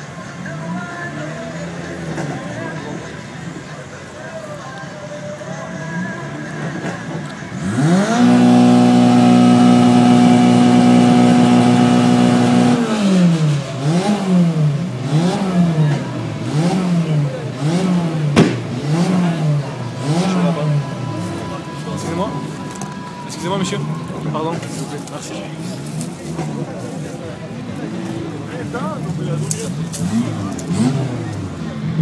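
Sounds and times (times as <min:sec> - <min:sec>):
car engine revving: 0:07.0 - 0:22.7, 0:23.4 - 0:32.0.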